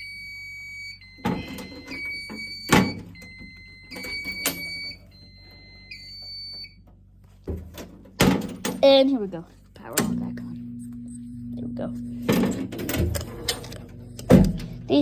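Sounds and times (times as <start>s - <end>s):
two-tone fire alarm sounder: 0.0s - 6.8s
handling knocks and clunks: 7.4s - 8.9s.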